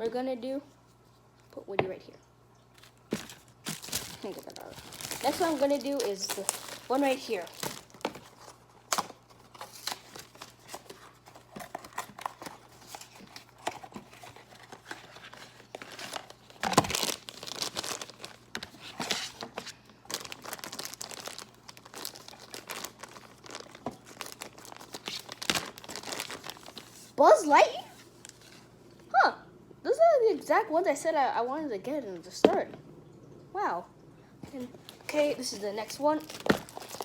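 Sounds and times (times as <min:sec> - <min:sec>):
packaging crinkling and tearing: 0:02.7 - 0:28.7, 0:34.8 - 0:37.0
loud packaging rip: 0:15.8 - 0:19.4.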